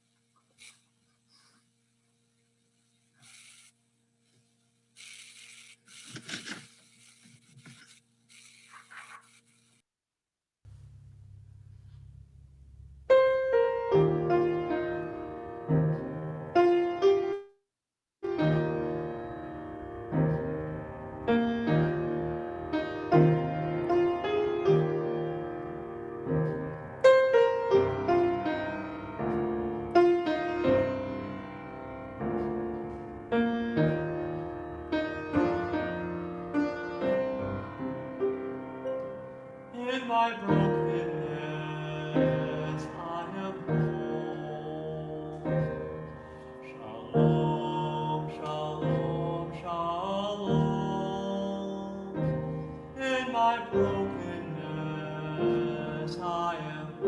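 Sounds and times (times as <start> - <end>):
solo piano playing: 13.1 - 17.6, 18.2 - 39.8.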